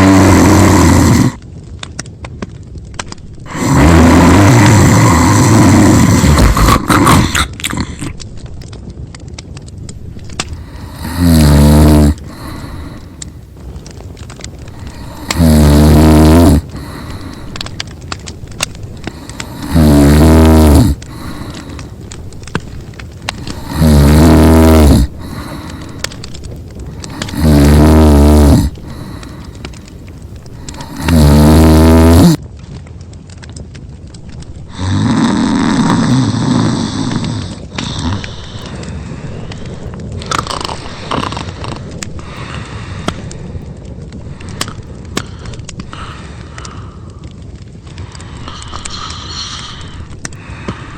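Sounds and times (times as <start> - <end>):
cartoon snoring: 0.0 - 1.4, 3.5 - 7.9, 10.7 - 13.0, 14.8 - 17.3, 19.2 - 21.7, 23.4 - 25.8, 27.0 - 29.5, 30.6 - 32.4, 34.7 - 38.4
long rough sound: 0.0 - 1.4, 3.0 - 32.4, 33.9 - 50.9.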